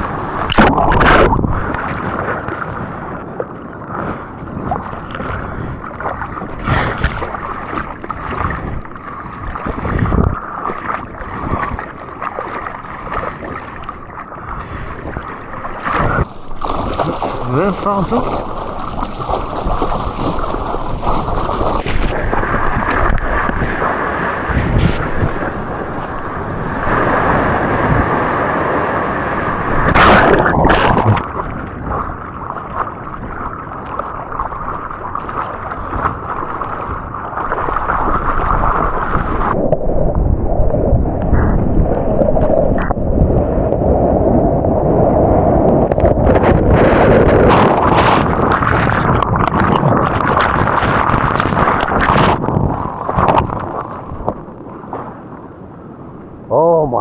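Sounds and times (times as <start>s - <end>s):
wind buffeting microphone: 16.0s - 32.4s, 38.0s - 56.5s
ocean surf rushing water: 16.2s - 21.9s
water splashes crackling: 16.2s - 21.9s.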